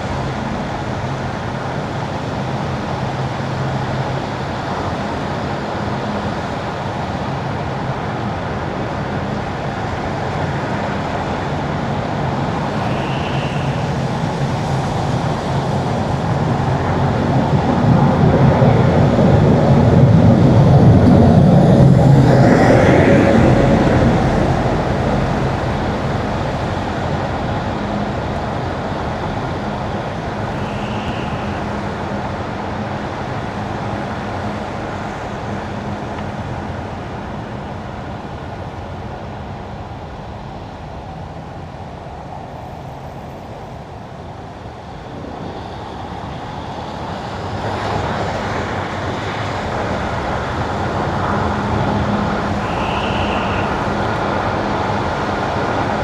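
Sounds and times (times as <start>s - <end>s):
low car hum: 12.2s - 31.8s, 46.7s - 56.0s.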